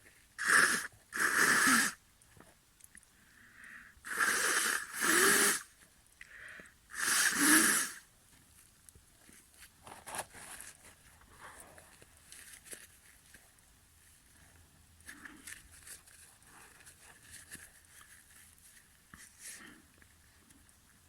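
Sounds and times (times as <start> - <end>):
person breathing wheezily: 3.2 - 8.0.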